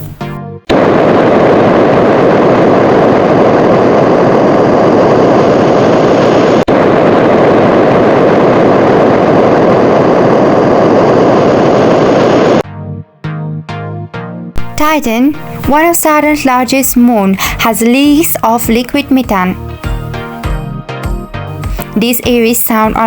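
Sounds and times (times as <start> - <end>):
steady rumbling rush: 0.0 - 12.6.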